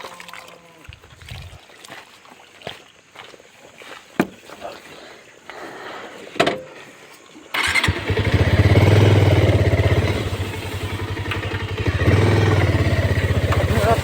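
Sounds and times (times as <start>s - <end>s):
vehicle engine starting and idling: 7.5s - 14.0s.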